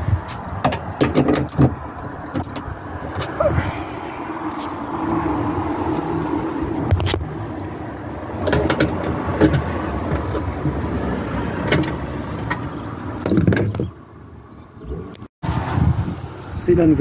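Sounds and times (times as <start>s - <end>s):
tools clicking and knocking: 0.6s - 3.3s.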